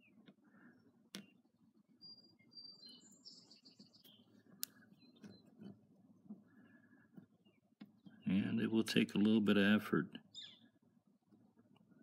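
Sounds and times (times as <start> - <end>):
faint high chirping: 0.0 - 5.7, 10.3 - 10.8.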